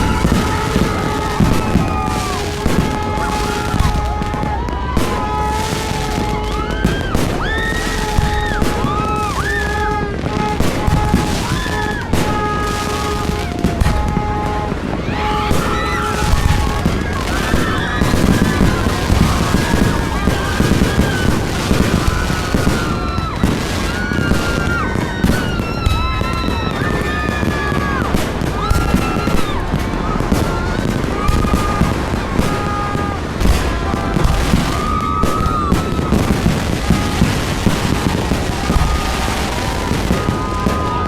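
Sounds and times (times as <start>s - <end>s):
fireworks crackling and banging: 0.0s - 41.0s.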